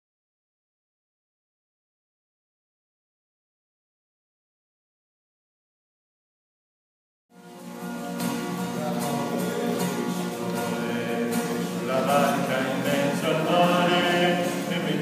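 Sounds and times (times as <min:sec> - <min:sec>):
guitar accompaniment: 0:07.3 - 0:15.0
congregation singing a hymn: 0:07.5 - 0:15.0.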